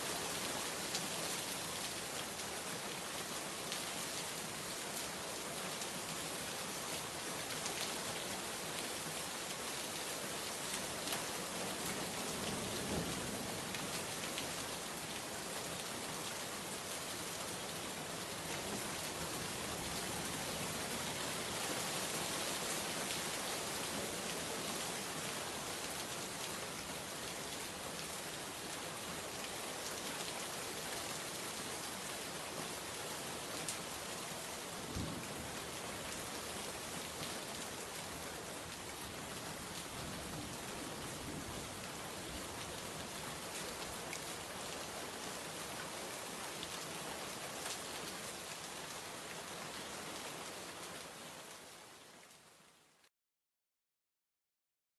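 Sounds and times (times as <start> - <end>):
rain pattering on a surface: 0.0 - 53.1.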